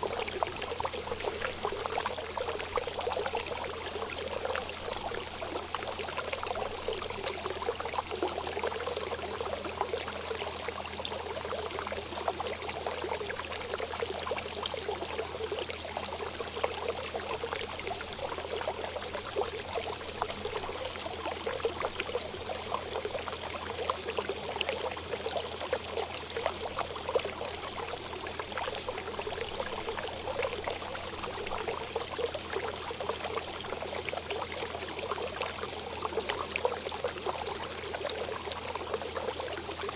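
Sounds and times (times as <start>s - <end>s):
running water splashing: 0.1s - 4.0s.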